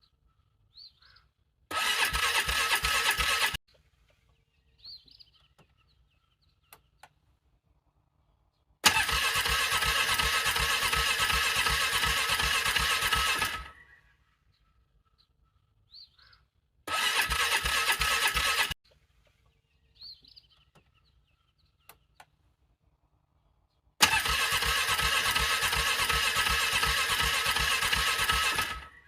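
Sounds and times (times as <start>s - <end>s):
birds chirping faintly: 0.0s - 1.7s, 3.7s - 8.8s, 13.4s - 16.8s, 18.3s - 24.0s
starter cranking an engine: 1.7s - 3.6s, 8.8s - 13.8s, 16.9s - 18.8s, 24.0s - 29.0s.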